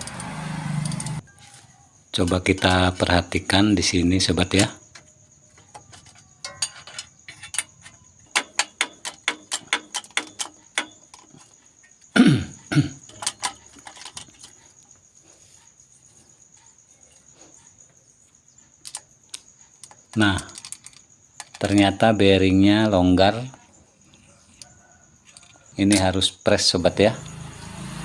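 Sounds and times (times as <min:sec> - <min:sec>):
metallic clicks and knocks: 0:04.5 - 0:11.9, 0:18.7 - 0:21.9
short cough-like falling sound: 0:12.2 - 0:13.0.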